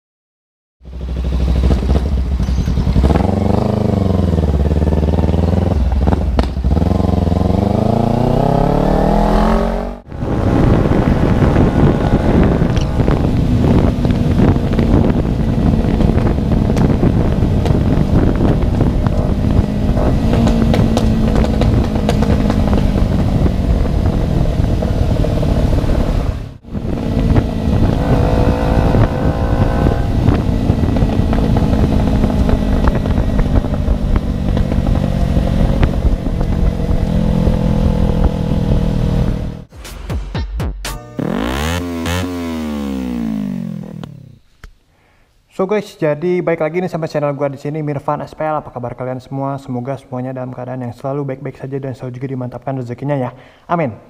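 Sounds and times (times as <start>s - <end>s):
motorcycle engine revving: 0.8s - 39.7s, 41.0s - 44.5s.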